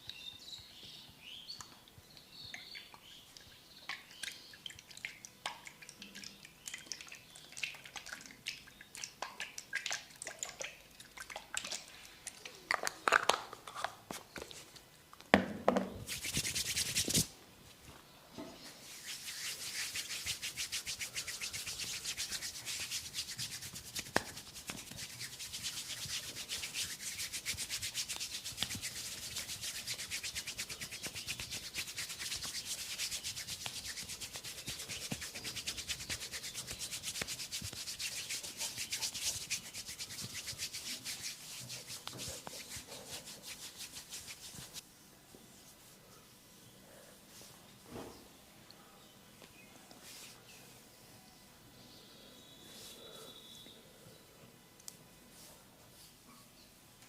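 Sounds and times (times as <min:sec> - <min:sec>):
massage rubbing on skin: 0:16.0 - 0:17.3, 0:18.8 - 0:44.8, 0:50.0 - 0:50.4.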